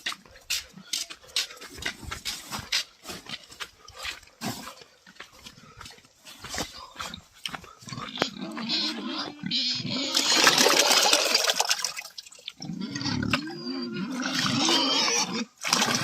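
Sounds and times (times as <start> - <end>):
pigs grunting: 3.1 - 11.5, 12.5 - 16.0
liquid sloshing into trough: 10.1 - 13.4, 15.6 - 16.0.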